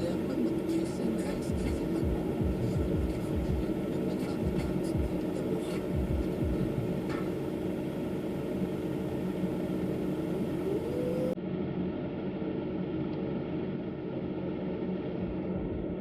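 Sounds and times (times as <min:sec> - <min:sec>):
muffled car radio: 0:00.0 - 0:11.4
car heater fan blowing: 0:00.0 - 0:16.0.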